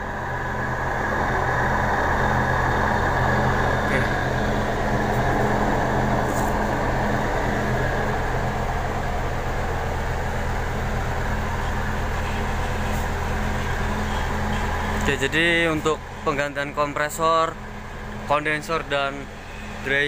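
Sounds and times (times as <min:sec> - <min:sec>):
air conditioning fans rushing: 0:00.0 - 0:20.0
bus engine idling: 0:00.0 - 0:20.0.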